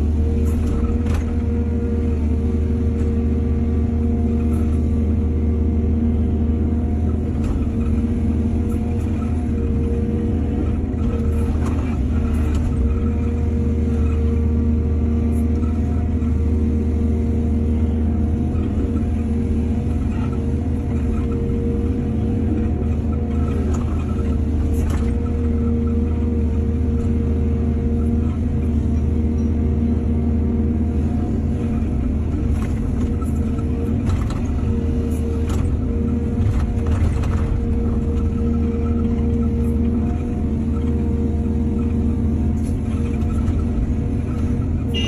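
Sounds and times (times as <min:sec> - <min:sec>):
diesel engine running: 0:00.0 - 0:45.0
knocks and clatters: 0:32.3 - 0:41.0.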